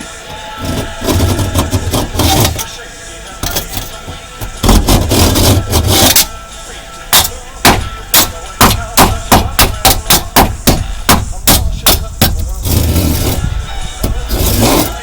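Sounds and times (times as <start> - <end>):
hammer striking metal padlock: 7.1 - 12.4.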